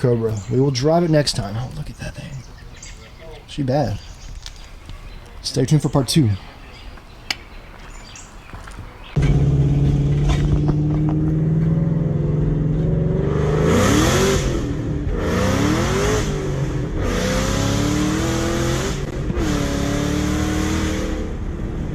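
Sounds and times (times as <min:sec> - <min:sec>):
car engine revving: 0:09.2 - 0:21.9.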